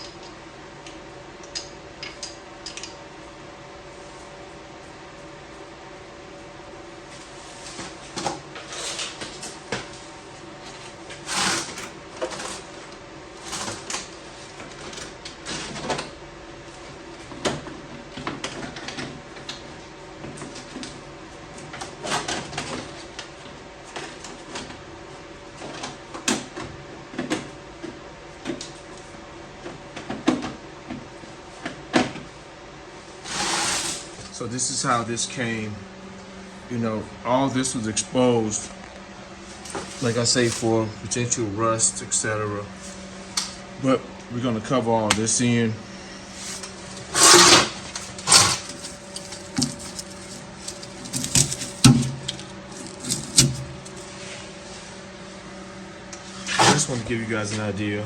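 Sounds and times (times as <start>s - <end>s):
steady background hum: 0.0s - 58.0s
metal tools clanking: 48.3s - 54.0s.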